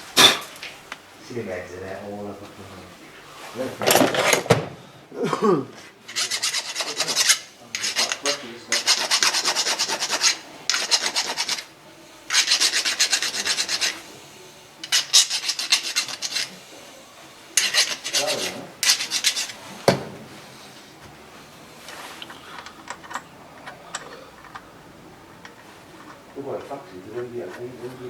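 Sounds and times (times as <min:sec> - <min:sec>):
hand rasping on a part: 0:06.1 - 0:11.7, 0:12.3 - 0:14.0, 0:14.8 - 0:16.6, 0:17.6 - 0:19.6.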